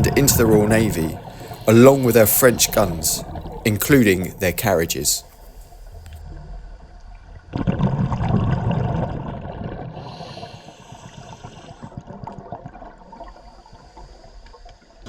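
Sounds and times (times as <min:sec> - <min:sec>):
exhaled bubbles gurgling: 0:00.0 - 0:13.8
regulator inhalation hiss: 0:00.8 - 0:03.6, 0:10.0 - 0:11.9.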